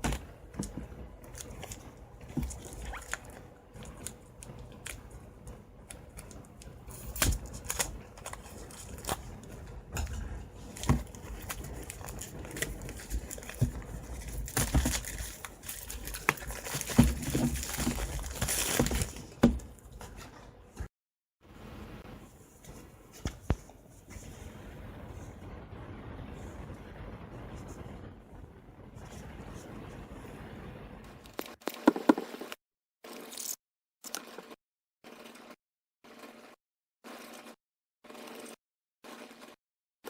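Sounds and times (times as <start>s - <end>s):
wrapper crinkling and tearing: 1.2s - 5.2s, 5.8s - 19.4s.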